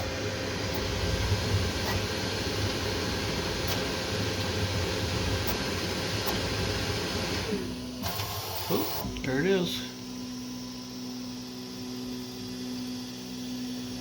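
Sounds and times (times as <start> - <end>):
fans whirring: 0.0 - 10.0.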